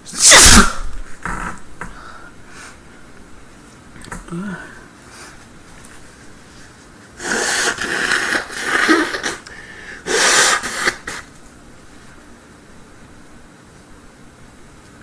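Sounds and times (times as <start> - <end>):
woman sneezing: 0.1 - 1.4, 7.2 - 11.3
woman gasping breaths: 1.8 - 2.8, 9.4 - 11.0.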